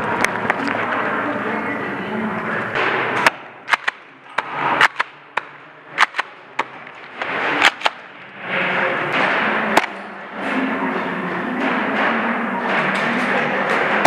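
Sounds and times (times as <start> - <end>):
airsoft gunshots: 2.8 - 8.1.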